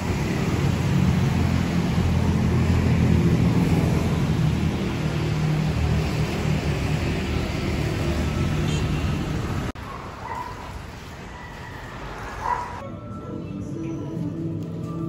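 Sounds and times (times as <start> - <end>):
vehicle rumble with low drone: 0.0 - 9.8.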